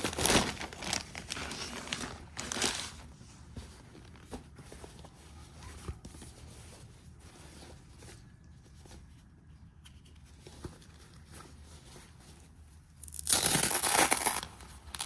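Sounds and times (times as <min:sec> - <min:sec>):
packaging rustling and tapping: 0:00.0 - 0:03.0.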